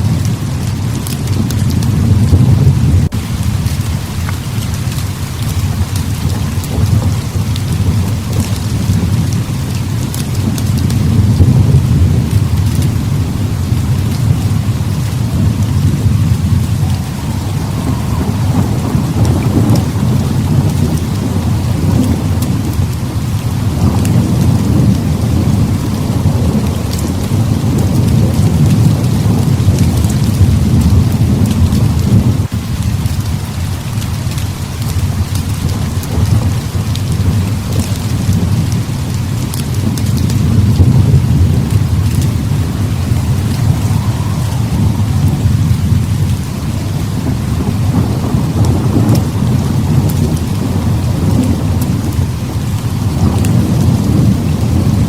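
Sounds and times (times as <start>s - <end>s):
rolling thunder: 0.0s - 33.6s, 34.9s - 55.0s
heavy rain hissing: 0.0s - 55.0s
small sharp crackles: 3.6s - 25.0s, 41.7s - 47.9s.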